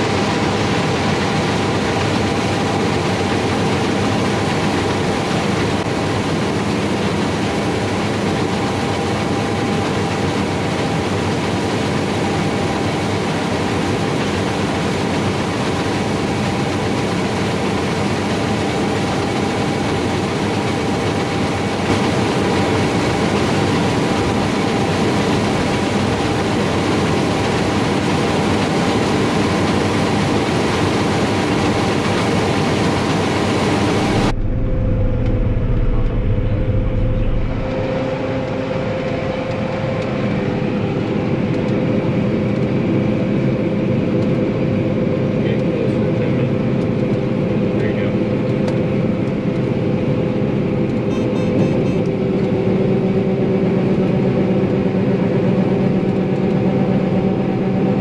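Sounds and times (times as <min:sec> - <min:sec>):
combine harvester running: 0:00.0 - 0:58.0.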